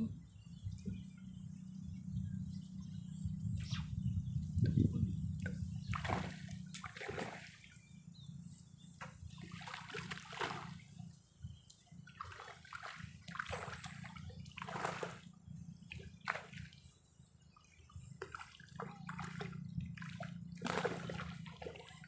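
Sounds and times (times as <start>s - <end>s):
low steady rumble: 0.0s - 12.4s, 13.0s - 22.0s
water splashing and sloshing: 4.6s - 22.0s.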